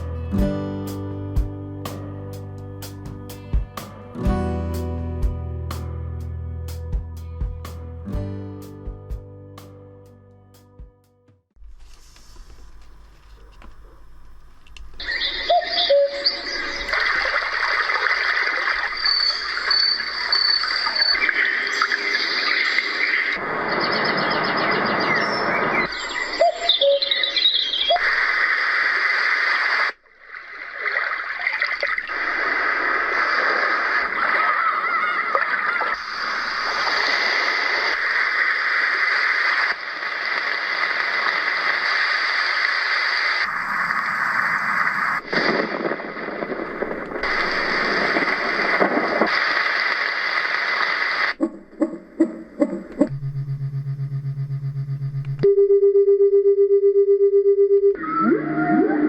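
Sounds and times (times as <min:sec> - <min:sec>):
recorded bird chirps: 0:14.8 - 0:17.5, 0:18.9 - 0:28.3
rhythmic pulses: 0:51.4 - 0:55.8.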